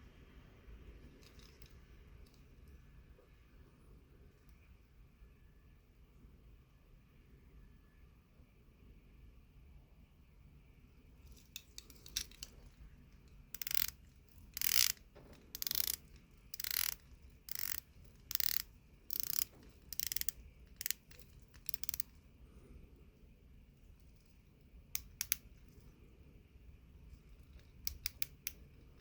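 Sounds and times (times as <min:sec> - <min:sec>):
watch bezel ratchet clicking: 0:13.5 - 0:22.1, 0:25.0 - 0:25.5, 0:27.5 - 0:28.7.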